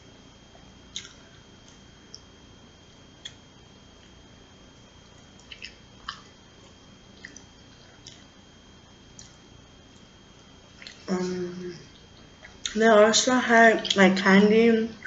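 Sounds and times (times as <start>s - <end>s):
chewing soft food: 0.5s - 2.3s, 3.0s - 4.2s, 4.9s - 11.1s, 11.9s - 12.8s
wet mouth clicks and smacks: 0.9s - 2.2s, 5.4s - 6.3s.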